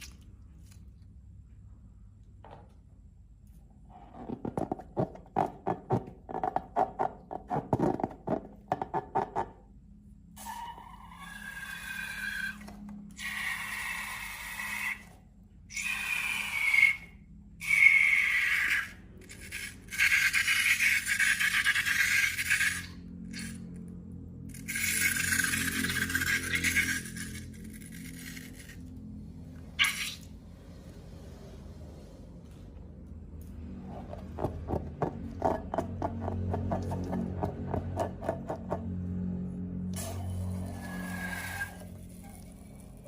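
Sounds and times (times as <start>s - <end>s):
balloon air hissing with squeal: 10.4s - 12.6s, 15.7s - 21.0s, 29.8s - 32.1s, 40.0s - 42.5s.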